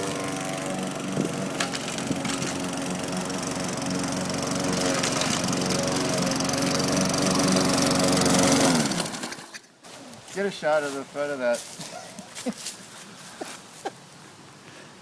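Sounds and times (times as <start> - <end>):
lawn mower engine running: 0.0 - 9.6.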